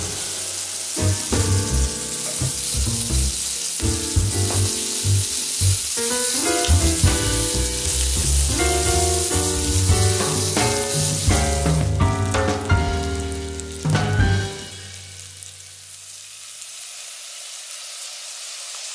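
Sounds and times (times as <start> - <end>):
food sizzling in a pan: 0.0 - 18.9
background music with plucked melody: 1.0 - 15.1.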